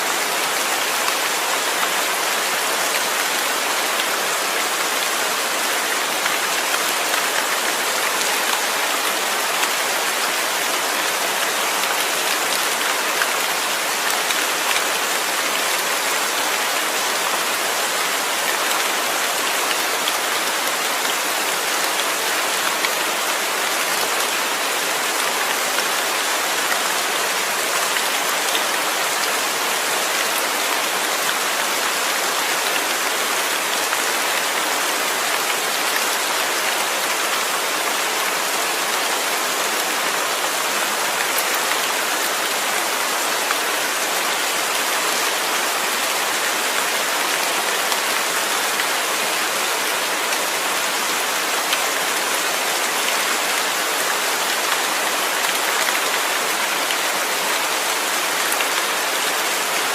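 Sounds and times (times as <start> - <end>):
steady rain falling: 0.0 - 59.9.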